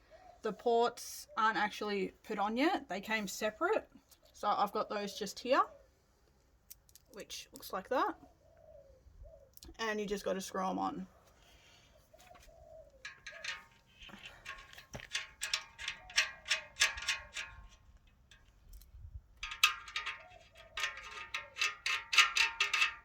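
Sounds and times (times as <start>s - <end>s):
dove cooing: 0.0s - 0.6s, 8.2s - 9.5s, 11.9s - 13.7s.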